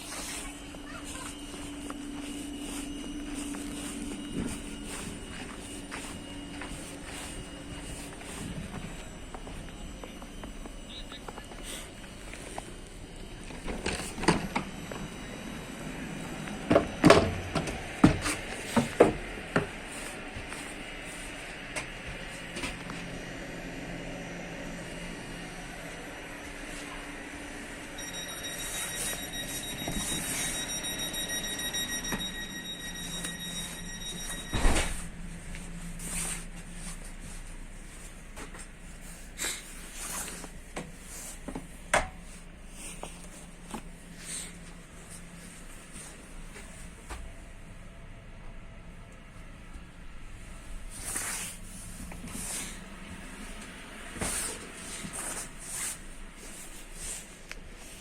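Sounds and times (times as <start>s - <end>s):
footsteps: 0.0s - 23.2s
train equipment hum: 0.0s - 58.0s.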